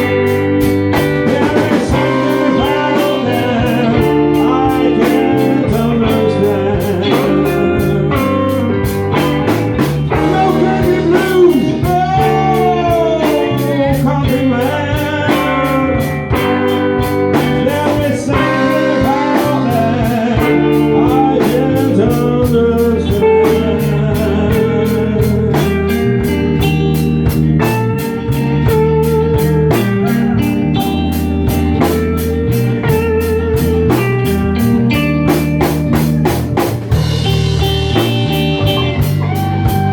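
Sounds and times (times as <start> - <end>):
person singing: 0.0 - 31.0
blues band playing live: 0.0 - 39.9.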